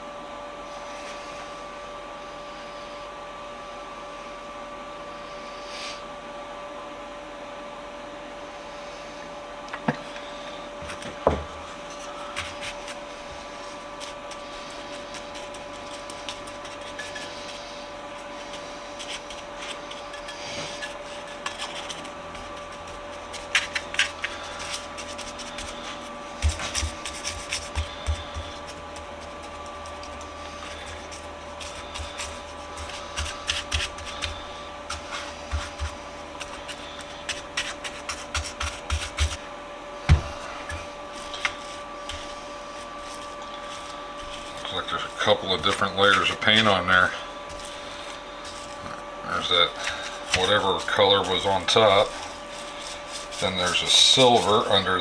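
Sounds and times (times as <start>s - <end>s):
steady hum: 8.7s - 55.0s
hand tool scratching metal: 11.7s - 39.5s, 40.3s - 55.0s.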